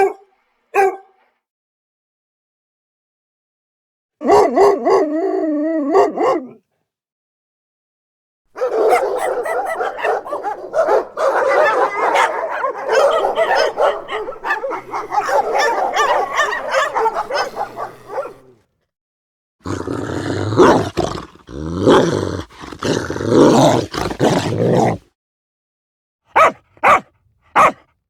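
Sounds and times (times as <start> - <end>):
dog barking: 0.0 - 1.3, 4.2 - 5.1, 5.9 - 6.6, 8.5 - 18.6, 20.6 - 20.9, 26.3 - 27.9
dog crying: 8.6 - 18.5.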